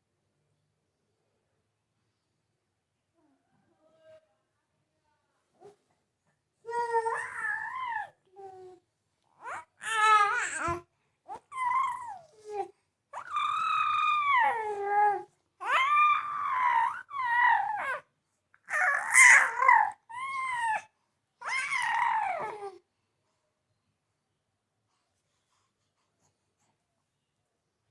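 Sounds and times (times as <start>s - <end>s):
baby crying and squealing: 6.7s - 8.1s, 9.4s - 12.6s, 13.2s - 18.0s, 18.7s - 22.8s.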